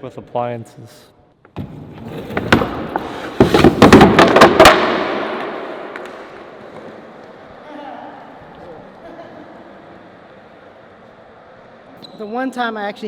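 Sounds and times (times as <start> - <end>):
wooden furniture smashing: 2.0 - 5.3.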